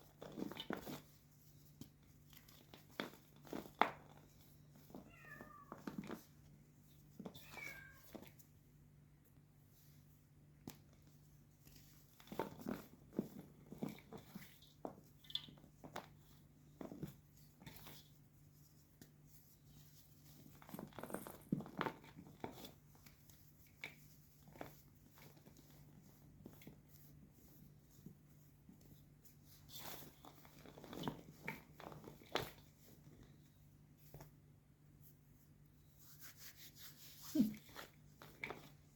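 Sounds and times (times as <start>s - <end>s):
chalk crunching and crackling: 35.8s - 38.8s.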